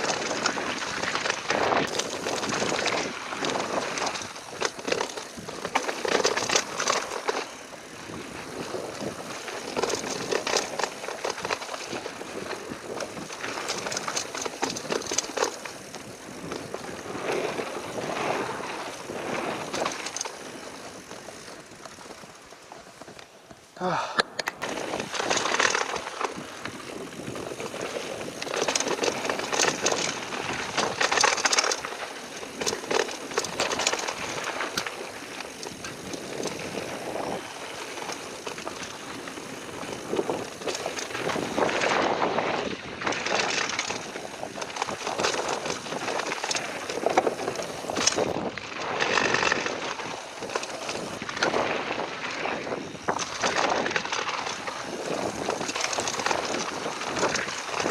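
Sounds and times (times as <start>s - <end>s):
bike clattering and rattling: 0.0s - 57.9s
tyres crunching over gravel: 0.0s - 57.9s
wind on microphone: 24.6s - 57.9s.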